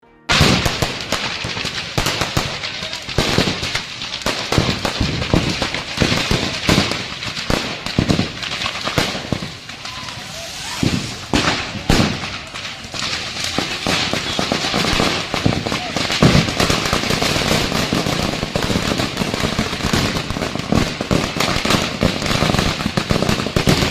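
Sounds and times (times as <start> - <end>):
firecrackers exploding: 0.3 - 23.9
people's voices: 2.4 - 3.4, 9.2 - 17.2.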